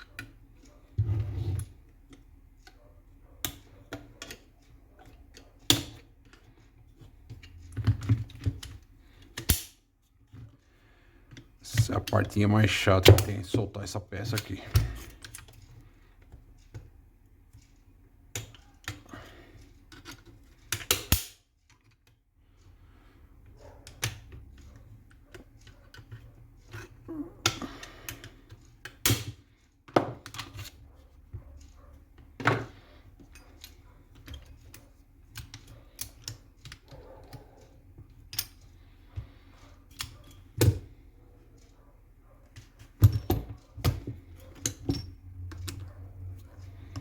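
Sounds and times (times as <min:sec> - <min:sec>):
hand tools clicking and knocking: 0:11.3 - 0:16.9, 0:23.6 - 0:47.0.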